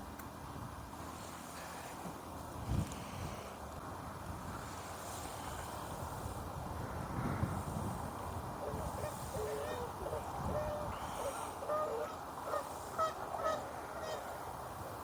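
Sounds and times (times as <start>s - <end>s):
low wind rumble: 0.0s - 15.0s
geese honking: 8.6s - 14.3s.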